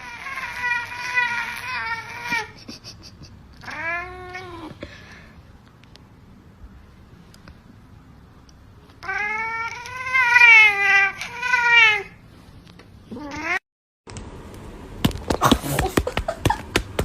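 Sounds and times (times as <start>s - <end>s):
cat yowling: 0.0s - 2.6s, 3.6s - 4.7s, 9.0s - 12.2s.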